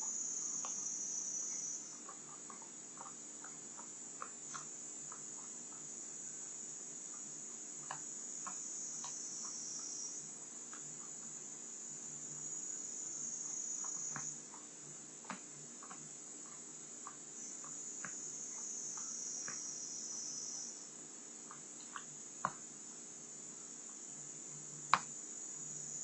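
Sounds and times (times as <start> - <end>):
shrill insect-like trilling: 0.0 - 2.2, 7.9 - 10.3, 12.1 - 14.4, 17.4 - 20.9, 25.5 - 26.0.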